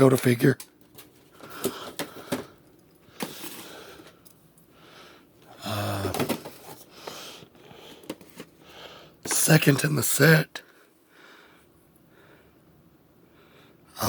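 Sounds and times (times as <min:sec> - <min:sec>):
person humming: 0:05.6 - 0:06.4.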